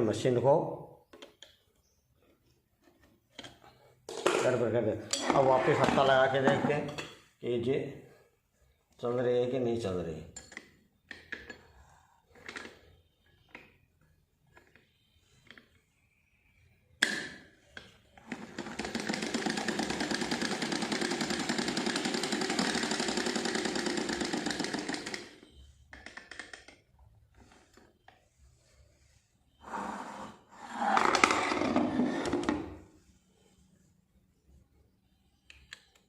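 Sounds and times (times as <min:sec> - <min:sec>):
sewing machine clattering: 0:18.3 - 0:25.4.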